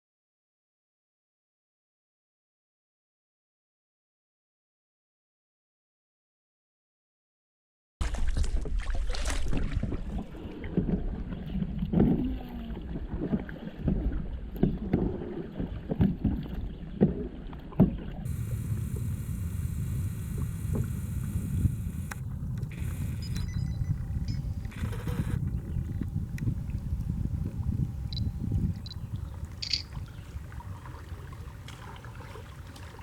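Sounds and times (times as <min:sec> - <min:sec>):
paddle strokes and knocks: 0:08.0 - 0:18.2, 0:29.5 - 0:33.0
wind rumble on microphone: 0:08.4 - 0:33.0
faint hiss: 0:18.3 - 0:23.5.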